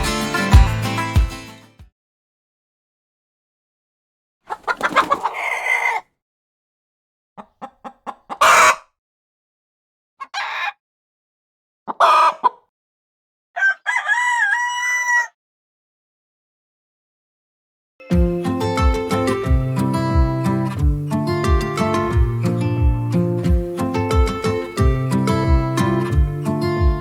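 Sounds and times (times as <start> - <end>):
chickens clucking and squawking: 4.5 - 6.0, 7.4 - 8.8, 10.2 - 10.8, 11.9 - 12.7, 13.6 - 15.3
rooster crowing: 13.6 - 15.4.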